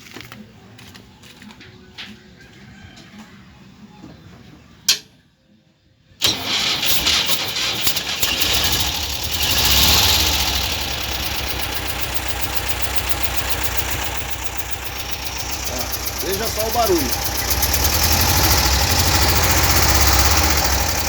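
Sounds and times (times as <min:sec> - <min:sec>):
engine starting and idling: 0:06.2 - 0:21.0.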